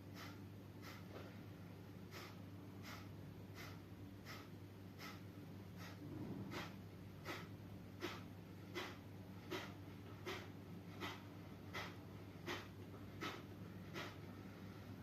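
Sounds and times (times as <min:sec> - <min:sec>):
steady low hum: 0:00.0 - 0:15.0
person breathing sharply: 0:00.1 - 0:01.2, 0:02.1 - 0:05.2, 0:05.8 - 0:10.4.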